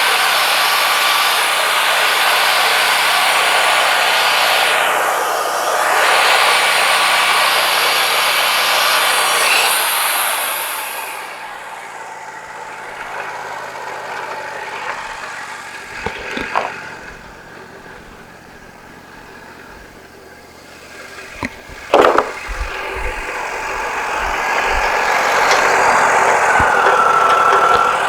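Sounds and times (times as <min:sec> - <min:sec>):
sawmill engine running: 0:00.0 - 0:28.0
bandsaw cutting: 0:12.7 - 0:28.0
loud clunk: 0:21.4 - 0:28.0
sharp knocks: 0:21.4 - 0:28.0.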